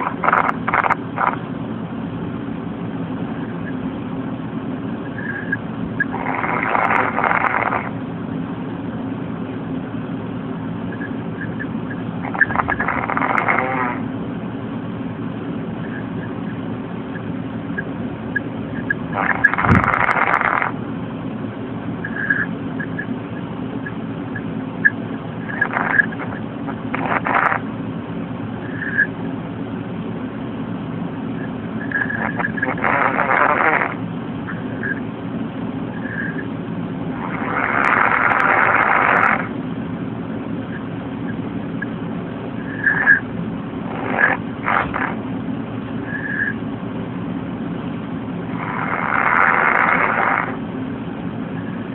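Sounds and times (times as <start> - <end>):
steady low hum: 0.0 - 51.9
man snoring: 6.1 - 7.9, 12.4 - 14.0, 32.2 - 34.0, 37.2 - 39.5, 48.5 - 50.6.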